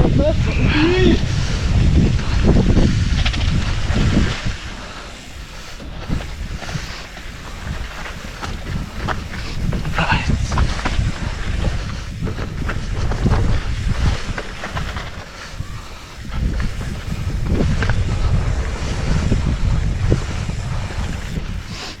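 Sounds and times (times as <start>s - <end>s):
bike knocking and rattling: 0.0s - 22.0s
wind buffeting microphone: 0.0s - 22.0s.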